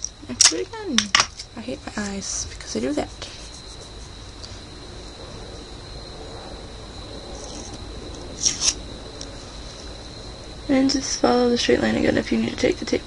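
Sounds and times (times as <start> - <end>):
steady high-pitched whine: 0.0 - 13.0
short hissing rustles: 2.0 - 4.7.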